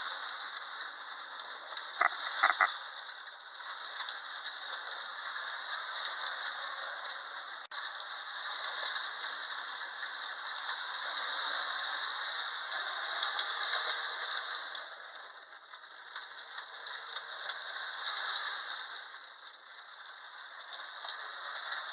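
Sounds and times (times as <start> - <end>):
toy train clickety-clack: 2.0 - 2.7.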